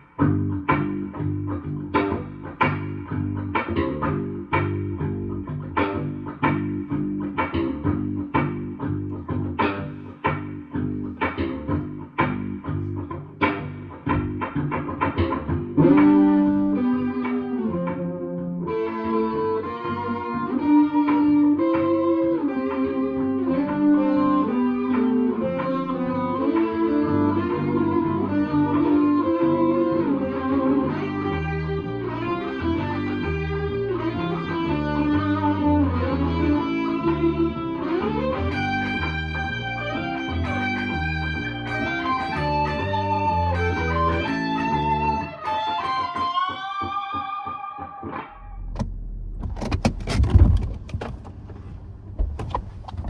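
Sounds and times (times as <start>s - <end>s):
bass line: 0.0s - 16.8s, 30.8s - 45.7s, 48.3s - 53.0s
electric guitar single notes: 0.0s - 49.3s.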